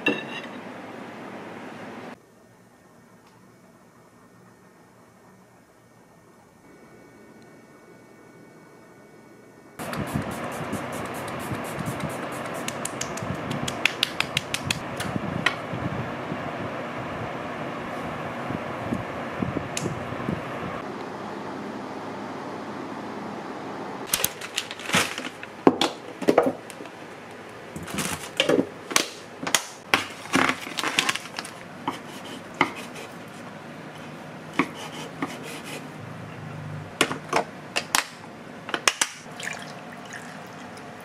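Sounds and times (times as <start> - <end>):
dishes and pots clinking: 0.0 - 0.6.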